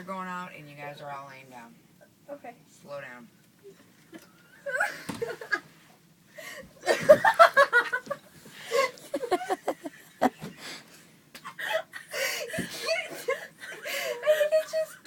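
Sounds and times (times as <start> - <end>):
girls laughing and giggling: 4.1 - 5.8, 6.6 - 15.0.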